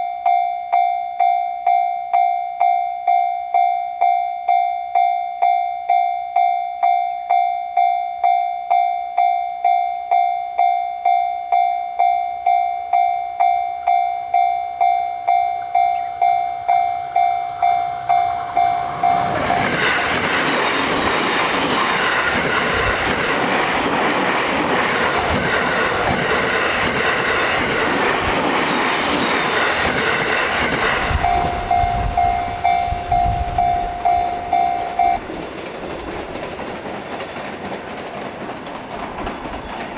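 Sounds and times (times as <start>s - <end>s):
railroad crossing bell ringing: 0.0s - 38.0s
train wheels rumbling on rails: 13.9s - 39.9s.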